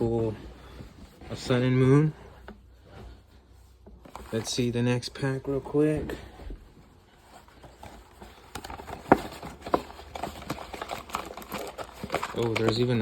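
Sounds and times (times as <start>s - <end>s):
packaging clicks and taps: 8.4s - 13.0s.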